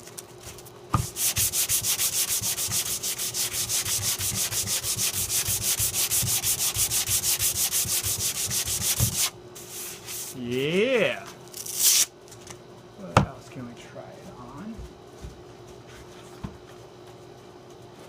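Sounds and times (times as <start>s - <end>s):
sandpaper rubbing strokes: 1.0s - 10.4s.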